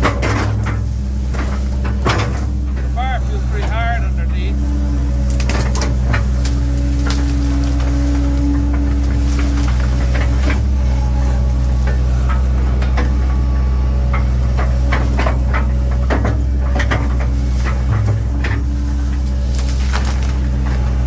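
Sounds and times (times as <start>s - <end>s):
excavator diesel engine running: 0.0s - 21.0s
sharp cracks and knocks: 19.2s - 20.5s.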